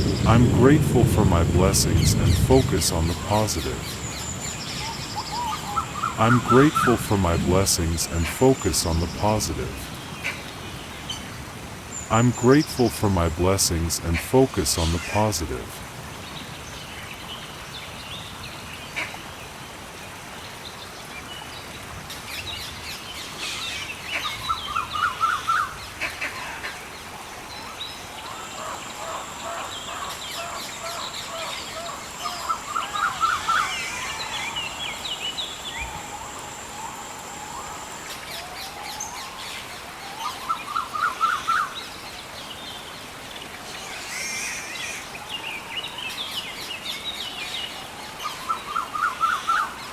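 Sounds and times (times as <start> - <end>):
steady background hiss: 0.0 - 49.9
birds calling: 1.2 - 11.2, 28.1 - 39.4.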